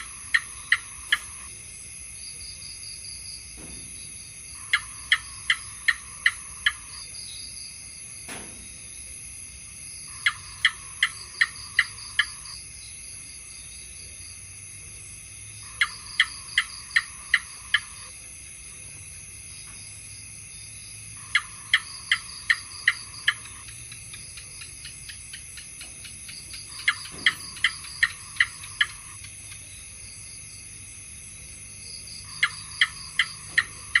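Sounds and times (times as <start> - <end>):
gecko chirping: 0.0 - 1.5, 4.6 - 7.1, 10.1 - 12.6, 15.6 - 18.1, 21.2 - 29.8, 32.2 - 34.0
high-pitched insect drone: 0.0 - 34.0.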